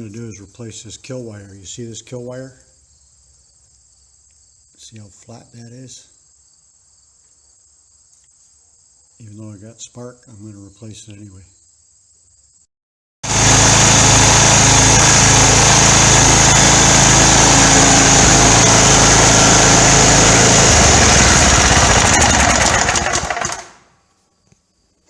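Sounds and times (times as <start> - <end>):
lawn tractor engine running: 13.2 - 23.8.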